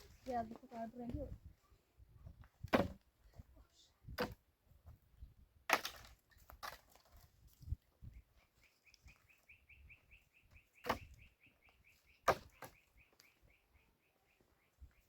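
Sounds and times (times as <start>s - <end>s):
bird chirping: 8.5s - 15.0s.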